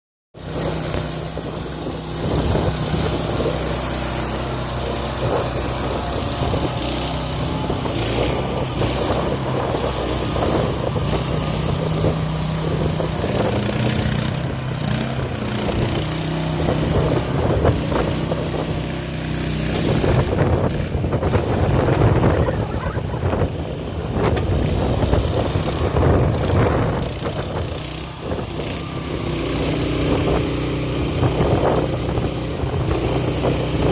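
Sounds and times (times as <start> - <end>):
excavator engine running: 0.4 - 33.9.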